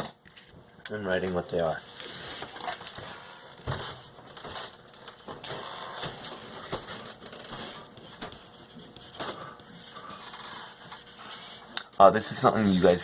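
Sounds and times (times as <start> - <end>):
scratchy writing on board: 6.4 - 13.0.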